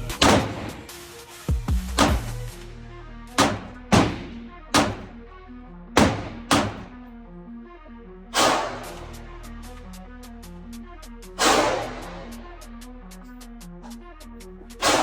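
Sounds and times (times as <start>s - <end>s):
background music: 0.0s - 15.0s
pistol shots echoing: 0.1s - 1.0s, 2.0s - 2.4s, 3.4s - 5.2s, 6.0s - 7.0s.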